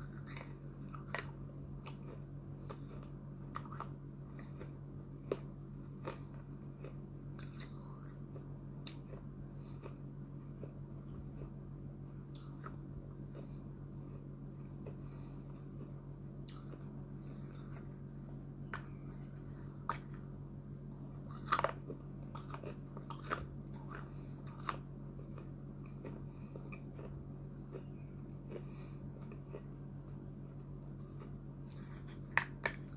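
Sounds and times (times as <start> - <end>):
clay being crunched and chewed: 0.0 - 32.9
steady low hum: 0.0 - 32.9.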